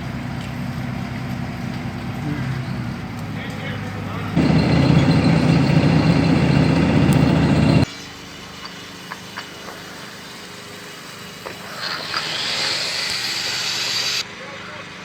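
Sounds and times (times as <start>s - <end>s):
machine engine running: 0.0s - 7.9s
hissing: 4.4s - 7.9s.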